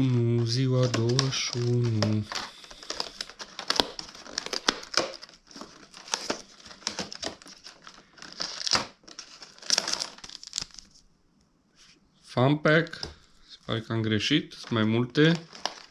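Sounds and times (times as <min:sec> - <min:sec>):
packaging crinkling and tearing: 0:00.0 - 0:11.0, 0:14.5 - 0:15.9.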